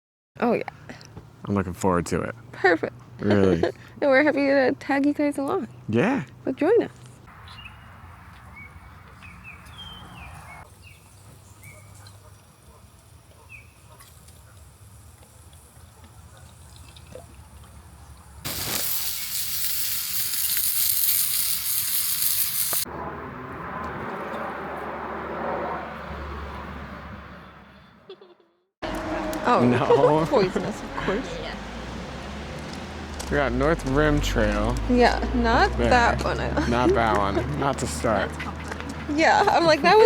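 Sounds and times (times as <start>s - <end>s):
loud hissing rush: 18.5s - 22.9s.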